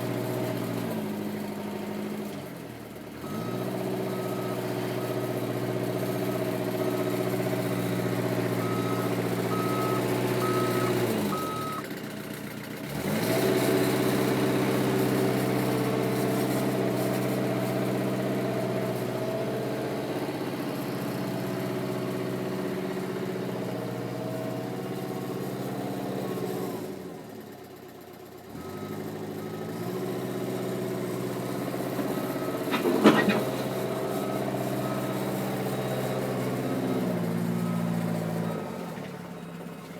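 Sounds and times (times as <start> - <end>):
diesel engine running: 0.0 - 39.9
motion alarm beeping: 8.6 - 11.8.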